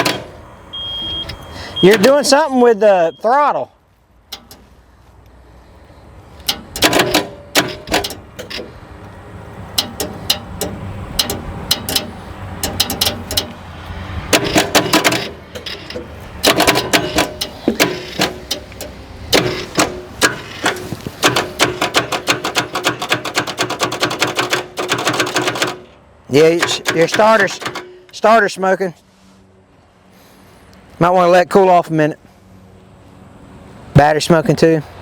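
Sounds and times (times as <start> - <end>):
starter solenoid clicking: 9.7 - 13.6, 14.3 - 28.0.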